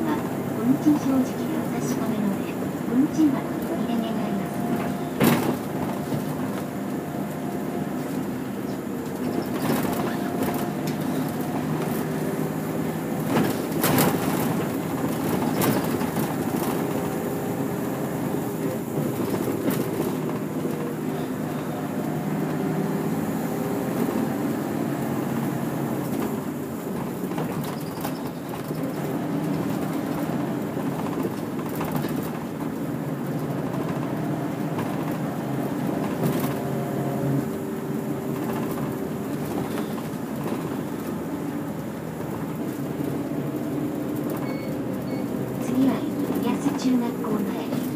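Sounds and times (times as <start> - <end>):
bus engine running: 0.0 - 47.9
road noise: 0.0 - 47.9
knocks and rattles: 13.2 - 17.2, 26.0 - 36.6.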